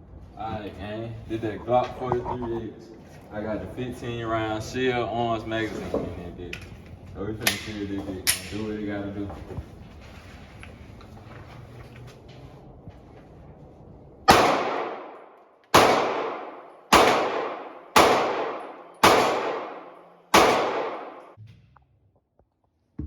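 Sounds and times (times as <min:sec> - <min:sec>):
pistol shots ringing out: 0:14.3 - 0:21.4.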